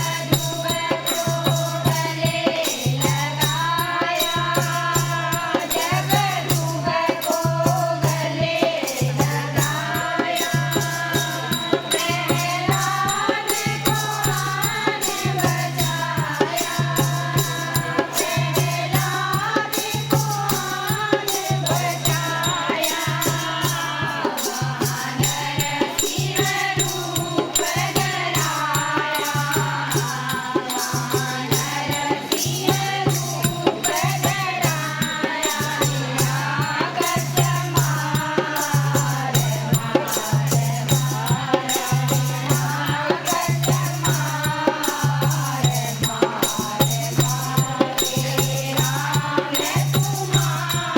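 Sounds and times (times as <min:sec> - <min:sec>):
group singing devotional song: 0:00.0 - 0:50.9
shaken rattle percussion: 0:00.0 - 0:50.9.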